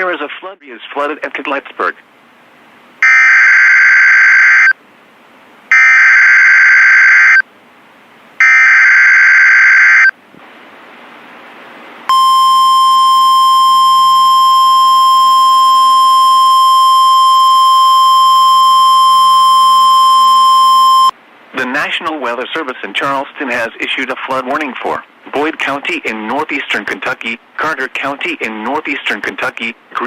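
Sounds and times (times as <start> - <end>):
steady attention tone: 12.1 - 21.1.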